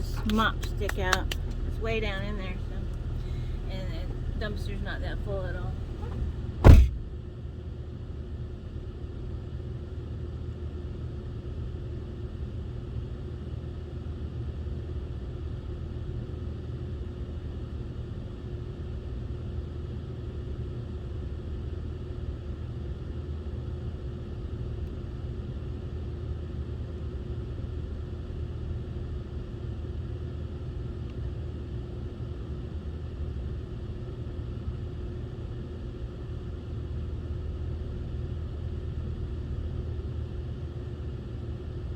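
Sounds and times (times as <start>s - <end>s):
car engine low rumble: 0.0s - 7.4s.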